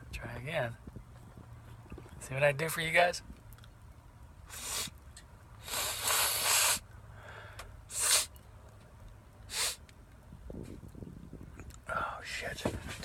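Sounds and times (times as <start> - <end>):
sharp nasal sniffs: 4.5 - 4.9, 5.6 - 6.8, 7.9 - 8.3, 9.5 - 9.8.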